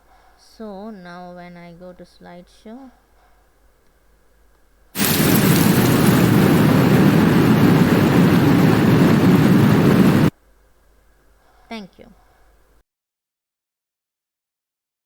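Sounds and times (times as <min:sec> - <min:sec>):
steady rain: 0:05.0 - 0:10.3.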